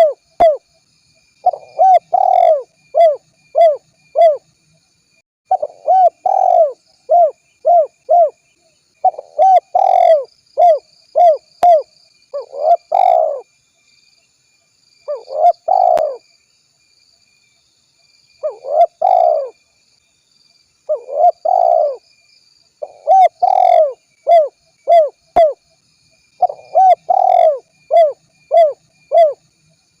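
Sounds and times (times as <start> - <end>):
dove cooing: 0.0 - 0.6, 1.4 - 4.4, 5.5 - 8.4, 9.0 - 13.4, 15.1 - 16.2, 18.4 - 19.6, 20.9 - 22.0, 22.8 - 25.6, 26.4 - 29.4.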